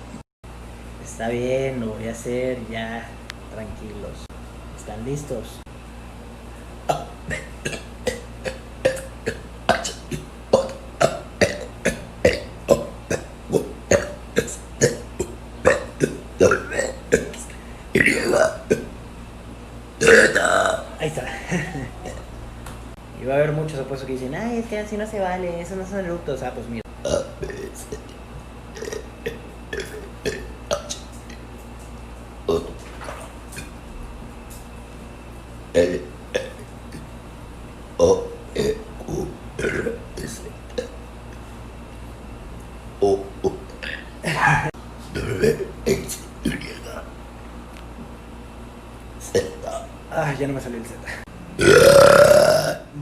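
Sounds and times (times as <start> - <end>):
man burping: 6.9 - 18.9, 20.0 - 22.3, 27.0 - 31.0, 32.5 - 32.8, 35.8 - 37.1, 38.0 - 41.0, 43.0 - 47.0, 49.2 - 49.9, 51.6 - 53.0.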